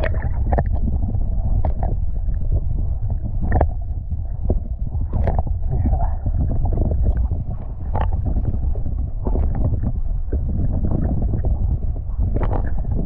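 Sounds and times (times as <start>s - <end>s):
water splashes: 0.0s - 2.4s
wind buffeting microphone: 0.0s - 13.0s.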